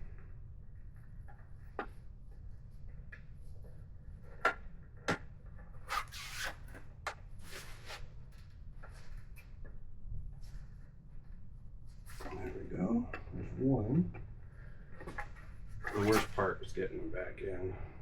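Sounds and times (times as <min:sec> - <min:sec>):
rubber grommet rubbing: 0:05.9 - 0:06.7, 0:15.8 - 0:16.5
scraping: 0:15.8 - 0:16.4.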